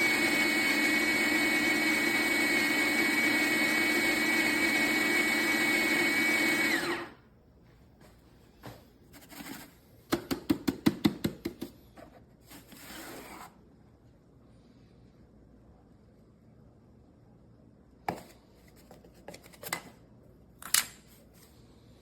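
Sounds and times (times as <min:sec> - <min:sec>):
coffee grinder motor whining: 0:00.0 - 0:07.2.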